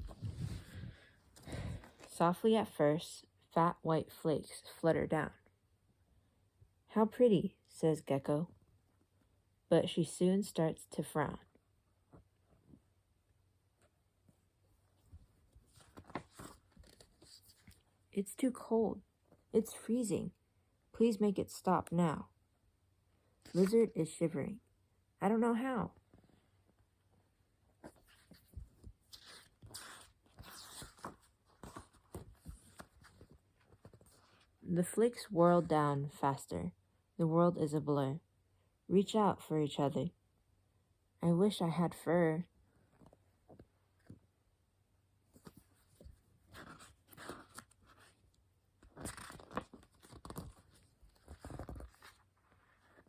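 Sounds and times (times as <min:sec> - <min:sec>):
paper page rustling: 0:15.5 - 0:17.9, 0:27.8 - 0:34.5, 0:45.3 - 0:53.0.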